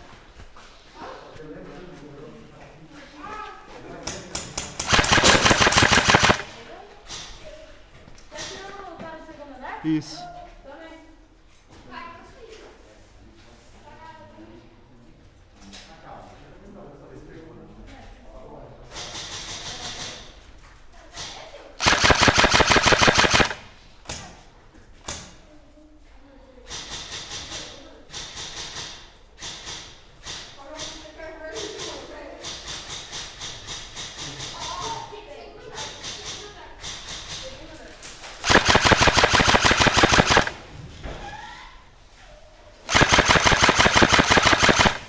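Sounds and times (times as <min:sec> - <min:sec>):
airsoft gun firing: 0:04.6 - 0:06.7, 0:21.8 - 0:23.8, 0:38.4 - 0:40.7, 0:42.9 - 0:45.0.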